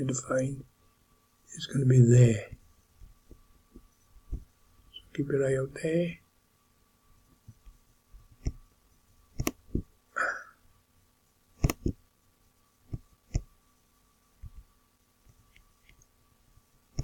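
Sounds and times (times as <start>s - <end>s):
faint electrical hum: 0.0s - 17.0s
computer mouse clicks: 8.4s - 8.6s, 9.3s - 9.8s, 11.6s - 12.0s, 12.9s - 13.5s
mouth sound: 9.8s - 10.6s.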